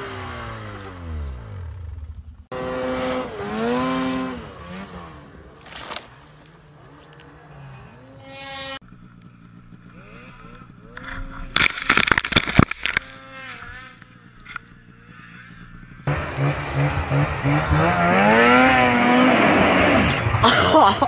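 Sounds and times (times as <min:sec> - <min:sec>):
snowmobile engines revving: 0:00.0 - 0:21.0.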